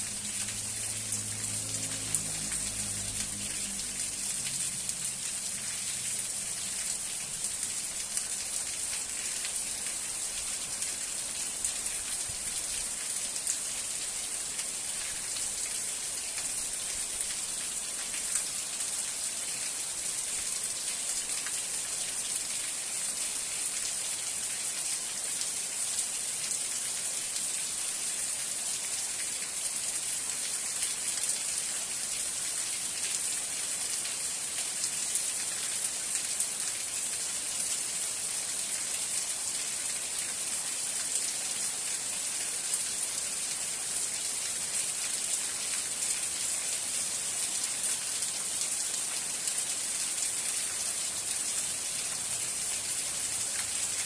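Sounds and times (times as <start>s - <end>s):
rain pattering: 0.0s - 54.0s.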